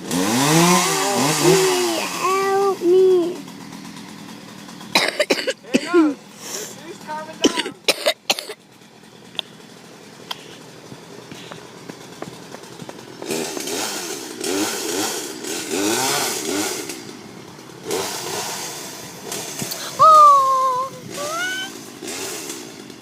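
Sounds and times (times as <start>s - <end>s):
chainsaw cutting tree: 0.0s - 23.0s.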